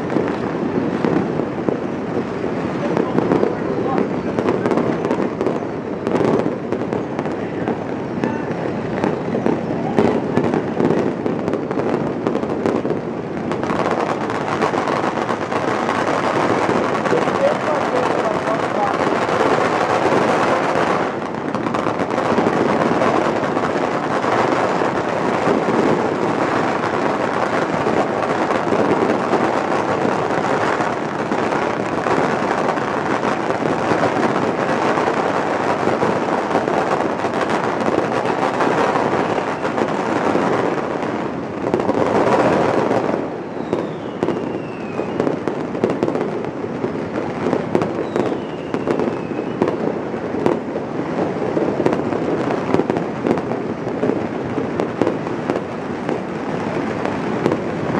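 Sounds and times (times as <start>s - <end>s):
firecrackers and fireworks banging: 0.0s - 57.9s
falling firework whistles: 41.8s - 46.1s, 47.7s - 49.8s.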